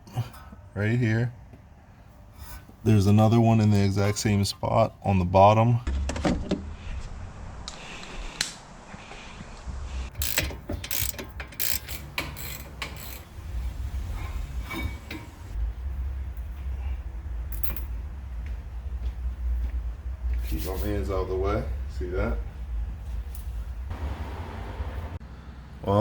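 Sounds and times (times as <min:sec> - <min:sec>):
socket ratchet clicking: 0:10.1 - 0:13.2
low rumble: 0:13.2 - 0:20.5.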